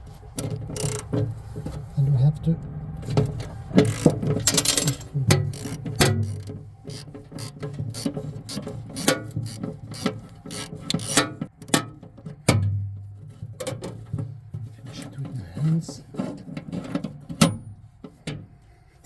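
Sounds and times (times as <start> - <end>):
ratchet wrench clicking: 0.1 - 1.1, 3.4 - 11.3.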